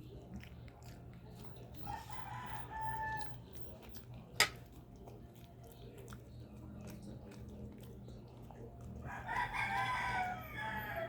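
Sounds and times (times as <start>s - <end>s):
rooster crowing: 1.8s - 3.4s, 9.1s - 11.0s.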